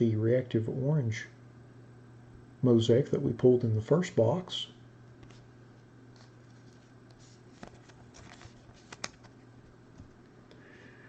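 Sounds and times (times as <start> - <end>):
low steady hum: 0.0 - 11.0
trading cards rustling: 6.1 - 10.2.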